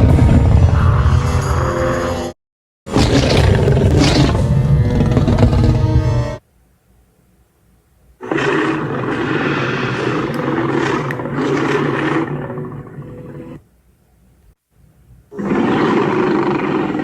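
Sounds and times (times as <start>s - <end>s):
big cat roar: 2.9s - 5.8s, 8.2s - 13.6s, 15.3s - 17.0s.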